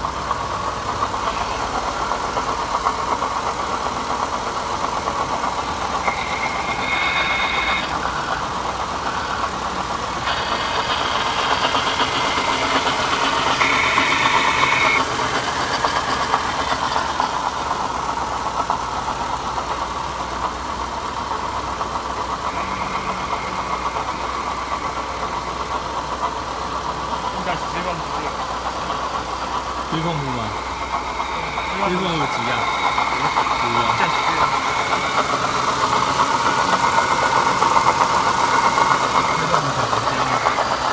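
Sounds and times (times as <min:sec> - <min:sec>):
car engine idling: 0:00.0 - 0:40.9
high thin tone: 0:06.0 - 0:08.0, 0:10.2 - 0:15.0, 0:30.0 - 0:35.4.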